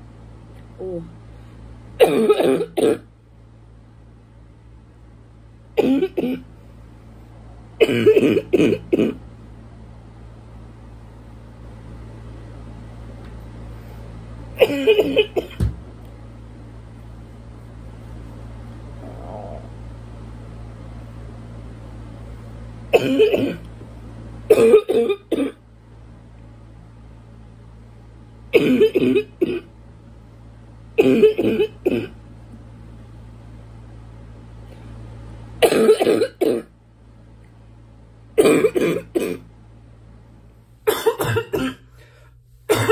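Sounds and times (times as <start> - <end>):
woman coughing: 2.0 - 3.1, 5.8 - 6.5, 7.8 - 9.2, 14.6 - 15.6, 22.9 - 23.7, 24.5 - 25.6, 28.6 - 29.7, 31.0 - 32.2, 35.6 - 36.7, 38.4 - 39.5, 40.9 - 41.9, 42.7 - 42.9.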